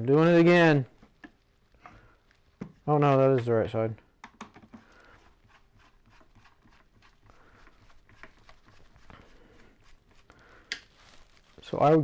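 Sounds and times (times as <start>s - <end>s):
handling noises: 7.9s - 12.0s.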